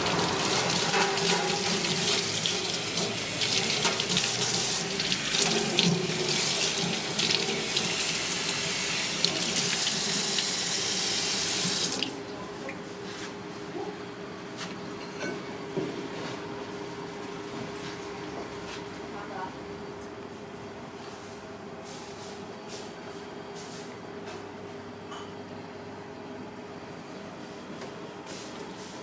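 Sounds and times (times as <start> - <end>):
tap water running into sink: 0.0 - 12.2.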